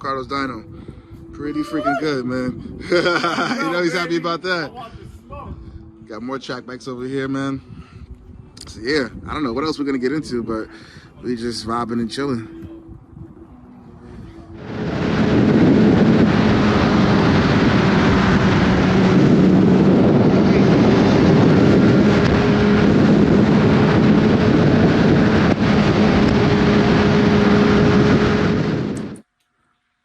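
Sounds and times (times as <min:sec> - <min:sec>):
wind rushing over microphone: 0:00.0 - 0:29.2
motorcycle engine drone: 0:12.8 - 0:30.0.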